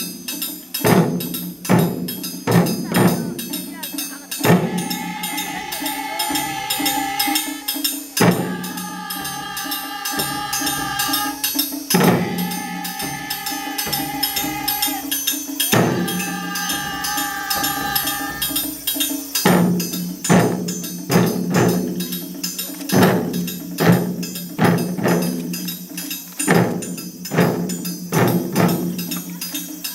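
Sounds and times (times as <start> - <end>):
taiko drum ensemble: 0.0 - 29.9
heavy single drum strokes: 4.4 - 7.6, 8.2 - 22.0
high ringing tone: 4.4 - 19.5.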